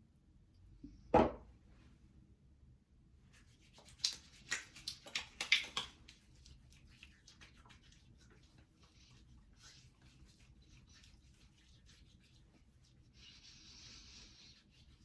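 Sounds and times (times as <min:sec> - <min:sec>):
hands rubbing balm on face: 0:03.3 - 0:15.0.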